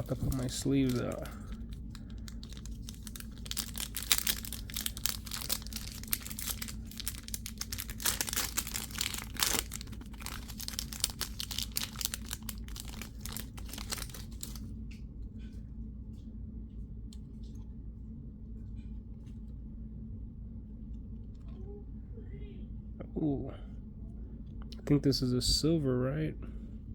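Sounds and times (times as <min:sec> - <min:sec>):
plastic wrapping crinkling: 0:00.0 - 0:14.7.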